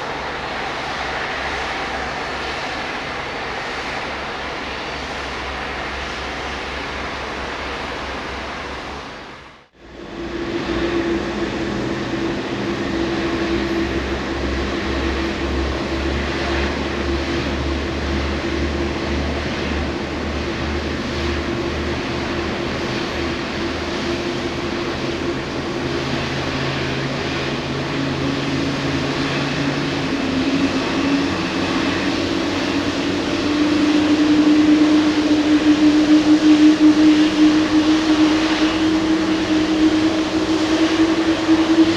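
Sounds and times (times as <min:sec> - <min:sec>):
jet engine starting with whine: 0:00.0 - 0:41.9
lower rising whine: 0:09.8 - 0:41.9.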